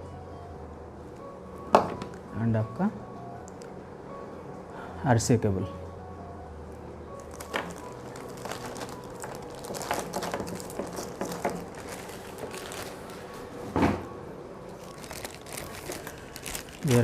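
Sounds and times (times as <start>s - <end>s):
packaging rustling: 7.2s - 13.5s, 14.8s - 17.0s.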